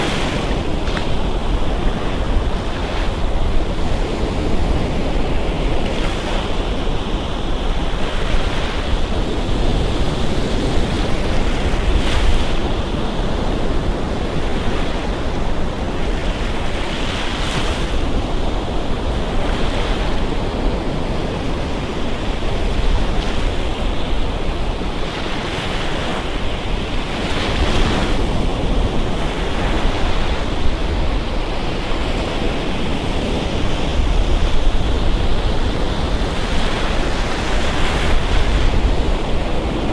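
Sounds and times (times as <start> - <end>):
surf breaking on beach: 0.0 - 39.9
wind rumble on microphone: 0.0 - 39.9.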